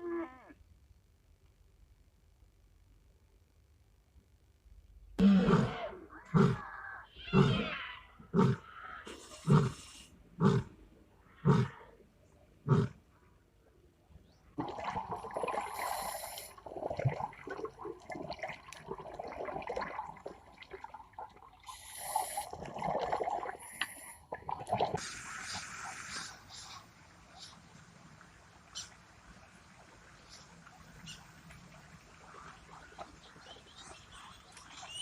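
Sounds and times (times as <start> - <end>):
animal low calls: 5.2 - 12.0.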